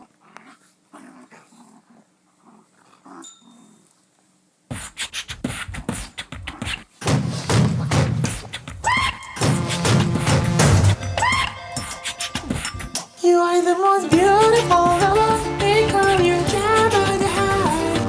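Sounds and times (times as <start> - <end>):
dogs growling: 0.0 - 3.9
dogs snarling and scuffling: 0.0 - 4.1, 4.8 - 7.0.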